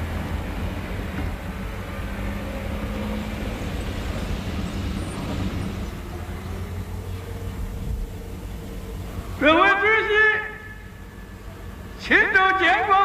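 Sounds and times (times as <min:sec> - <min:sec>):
vehicle engine running: 0:00.0 - 0:09.7.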